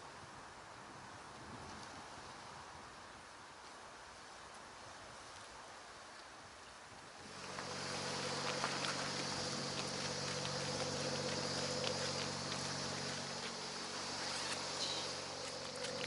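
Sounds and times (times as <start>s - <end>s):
high hiss: 7.2s - 16.0s
low engine hum: 7.2s - 16.0s.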